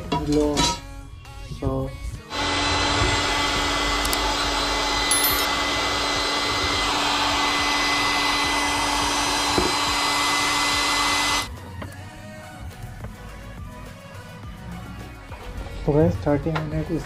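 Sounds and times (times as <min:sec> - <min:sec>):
hot-air gun blowing: 0:02.3 - 0:11.5.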